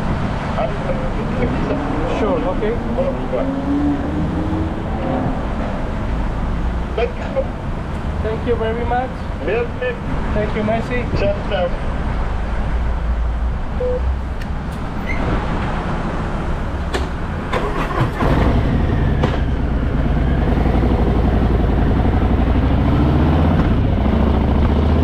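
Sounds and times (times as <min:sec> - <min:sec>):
sharp clicks: 0:14.3 - 0:15.0.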